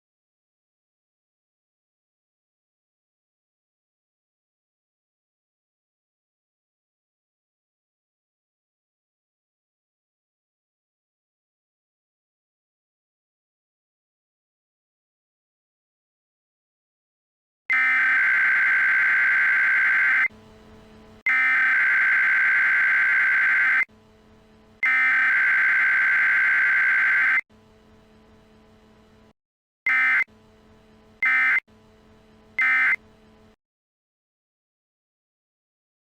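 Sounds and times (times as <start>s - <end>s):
screechy digital data bursts: 17.7s - 20.3s, 21.3s - 23.9s, 24.8s - 27.4s, 32.6s - 33.0s
faint hum: 17.7s - 33.6s.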